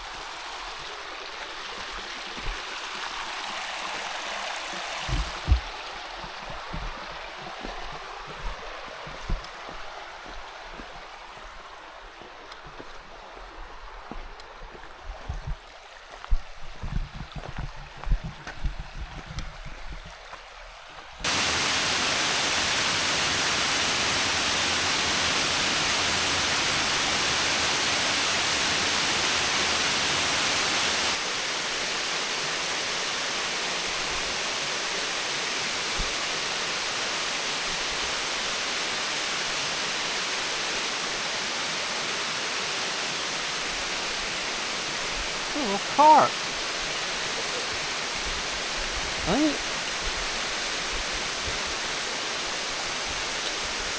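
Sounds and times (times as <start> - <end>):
creek water rushing over rocks: 0.0 - 53.9
low thumps: 5.0 - 9.5.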